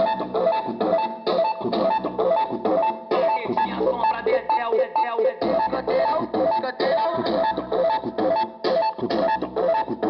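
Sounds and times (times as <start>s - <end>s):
dance song over sound system: 0.0s - 10.0s.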